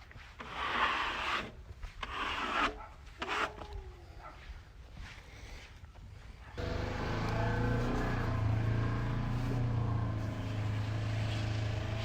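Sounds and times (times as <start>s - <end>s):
sawmill engine running: 6.6s - 12.0s.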